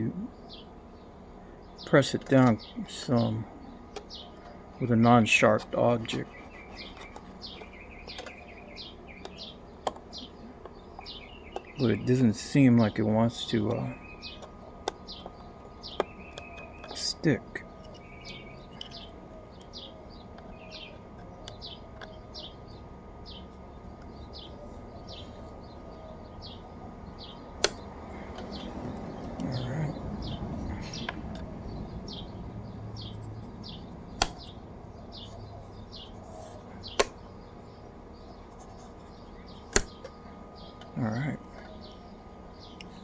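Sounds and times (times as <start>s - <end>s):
sharp clicks: 27.2s - 29.6s, 33.0s - 34.6s, 36.8s - 37.3s, 39.6s - 41.0s.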